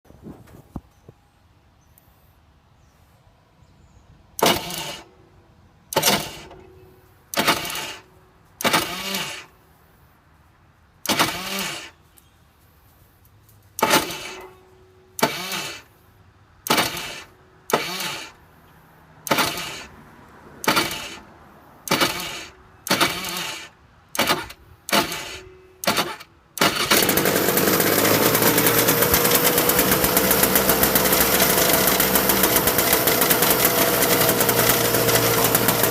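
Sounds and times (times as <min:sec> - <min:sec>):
electric starter whirring: 0:04.4 - 0:05.1, 0:05.9 - 0:06.7, 0:07.3 - 0:09.5, 0:11.0 - 0:12.0, 0:13.8 - 0:14.6, 0:15.2 - 0:15.9, 0:16.6 - 0:18.4, 0:19.2 - 0:20.0, 0:20.6 - 0:35.9
kart engine running loudly: 0:26.6 - 0:35.9.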